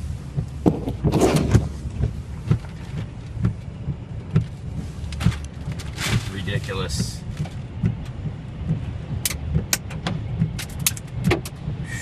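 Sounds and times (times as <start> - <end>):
wind rumble inside truck cab: 0.0 - 12.0.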